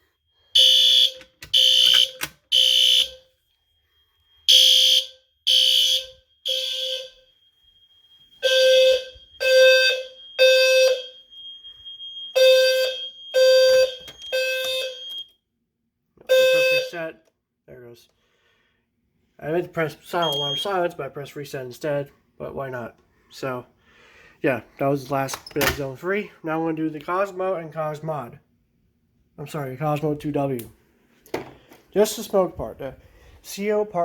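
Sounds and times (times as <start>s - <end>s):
low-pitched fire alarm horn: 0.0s - 15.4s, 16.2s - 17.1s, 20.1s - 20.8s.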